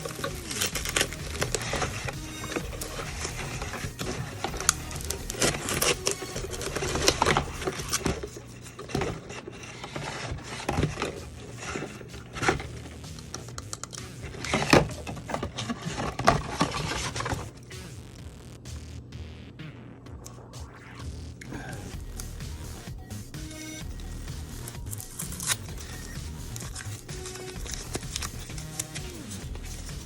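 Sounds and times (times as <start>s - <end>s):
hands dismantling a cardboard box: 0.0s - 17.5s, 24.8s - 30.0s.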